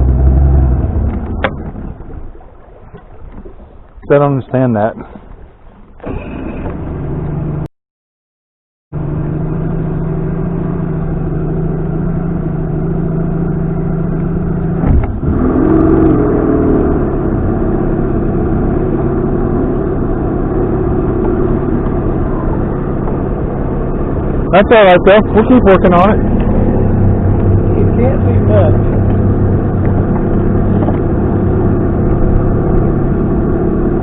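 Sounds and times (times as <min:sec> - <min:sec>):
outboard motor running: 0:00.0 - 0:07.7, 0:09.0 - 0:34.0
sharp clunk: 0:14.8 - 0:15.2.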